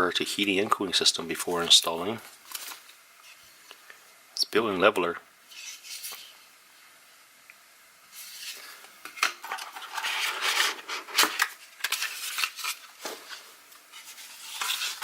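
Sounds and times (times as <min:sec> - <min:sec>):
packaging rustling: 0:02.3 - 0:02.9, 0:09.4 - 0:15.0.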